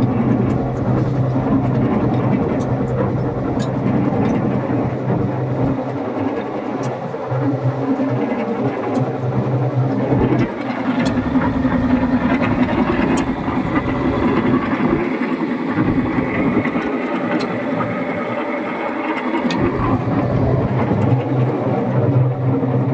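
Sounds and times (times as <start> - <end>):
concrete mixer droning: 0.0 - 22.9.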